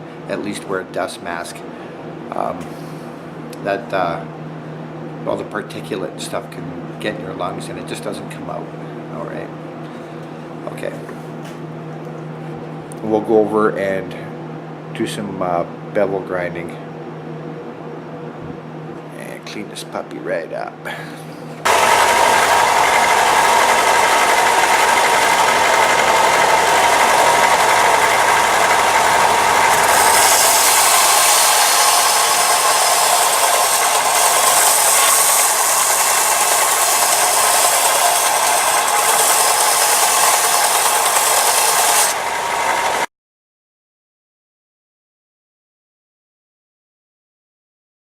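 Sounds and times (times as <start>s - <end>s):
power grinder grinding steel: 21.7s - 43.1s.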